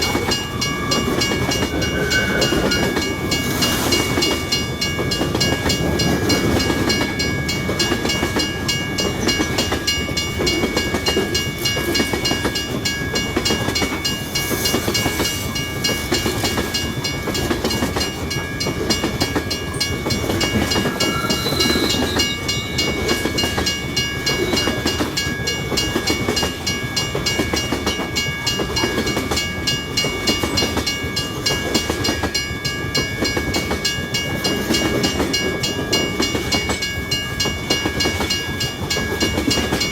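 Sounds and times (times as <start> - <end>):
freight train clacking over rails: 0.0 - 39.9
high-pitched tones: 19.1 - 26.2.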